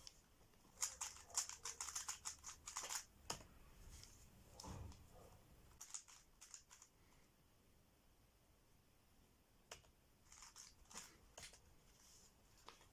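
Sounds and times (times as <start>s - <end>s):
puzzle cube clicking: 0.7s - 3.4s, 5.8s - 6.9s.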